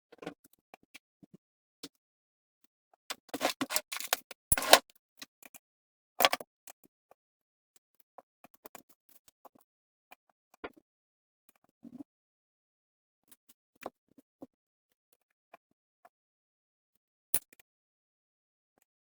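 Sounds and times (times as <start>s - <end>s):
tools clicking and scraping: 3.1s - 4.8s, 6.2s - 6.4s.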